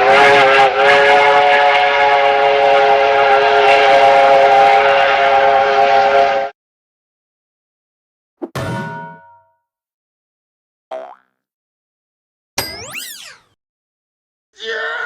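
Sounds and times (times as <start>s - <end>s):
multi-tone train horn: 0.0s - 6.6s.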